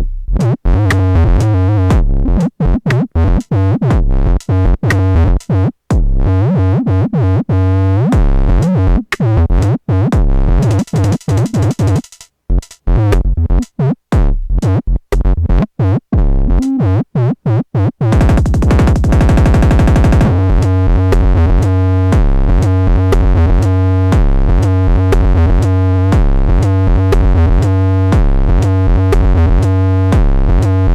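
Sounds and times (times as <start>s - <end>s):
loud repeating electronic pattern: 10.3s - 12.0s, 18.1s - 30.9s
stuttering electronic tones: 18.0s - 20.8s
dense electronic buzz: 18.0s - 30.9s.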